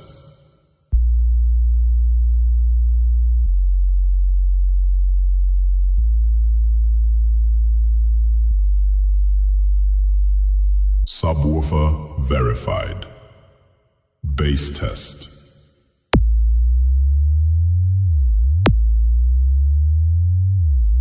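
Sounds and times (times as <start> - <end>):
deep sine-wave test tone: 1.0 - 12.2, 16.2 - 21.0.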